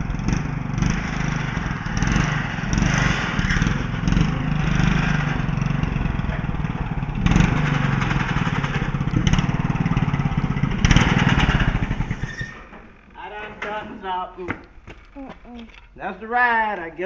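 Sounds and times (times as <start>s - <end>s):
riding lawn mower engine: 0.0s - 14.0s.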